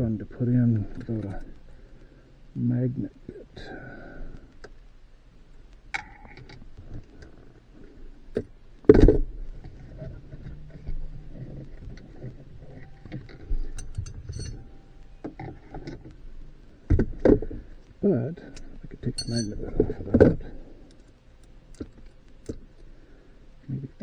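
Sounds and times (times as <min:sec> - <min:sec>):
screws and tools clicking and rattling: 0:12.6 - 0:15.3, 0:18.6 - 0:19.6.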